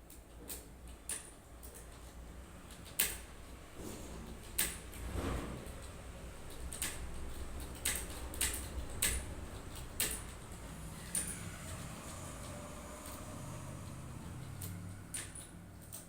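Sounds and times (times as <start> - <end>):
keyboard keys clicking: 6.5 - 11.8.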